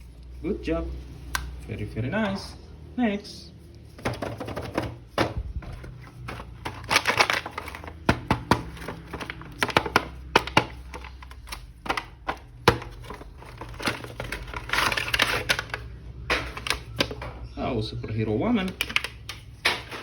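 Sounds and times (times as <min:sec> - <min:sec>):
hard plastic parts clicking: 0:04.0 - 0:17.3, 0:18.6 - 0:20.0
plastic packaging crinkling and tearing: 0:05.7 - 0:17.2, 0:18.6 - 0:19.6.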